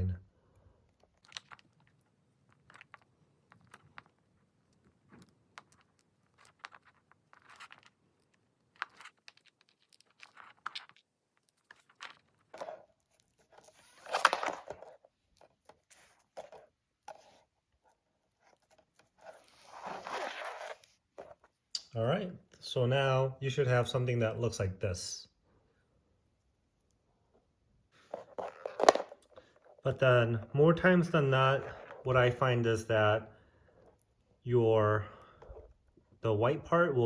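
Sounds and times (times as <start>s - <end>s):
nylon sleeve rustling and scraping: 11.7s - 21.6s, 28.0s - 29.8s.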